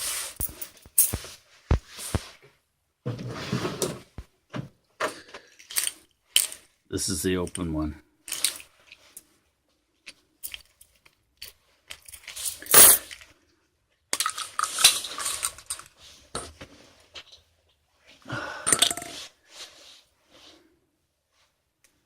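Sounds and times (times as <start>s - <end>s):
clicks and clinks of small parts: 0.4s - 1.3s, 5.3s - 6.7s, 8.3s - 9.3s, 10.0s - 13.3s, 14.1s - 16.0s, 18.6s - 19.2s.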